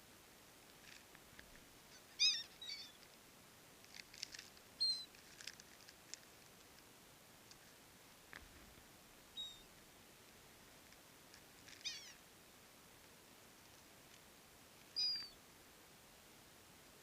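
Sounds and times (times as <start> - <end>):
gulls calling: 1.9 - 3.0, 11.7 - 12.2, 15.0 - 15.4.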